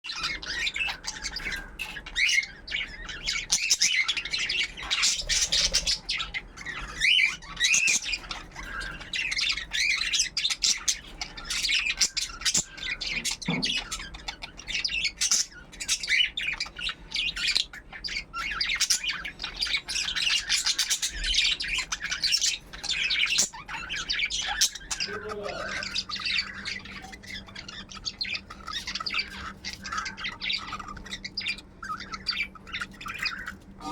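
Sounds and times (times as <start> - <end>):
parakeets chirping and squawking: 0.0 - 33.9.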